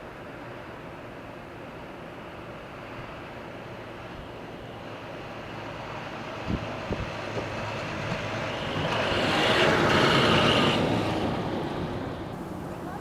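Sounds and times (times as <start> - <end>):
vehicle running: 2.7 - 13.0.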